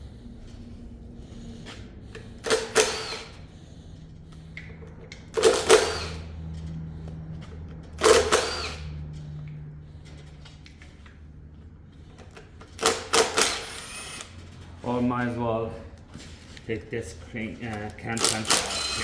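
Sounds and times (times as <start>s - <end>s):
hand-held power tool bursts: 2.2s - 3.5s, 5.3s - 6.3s, 8.0s - 9.0s, 12.7s - 14.4s, 18.0s - 19.0s.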